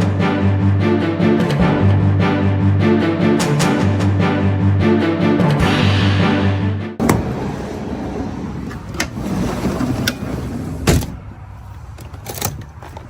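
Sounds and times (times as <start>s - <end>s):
intro music: 0.0s - 7.0s.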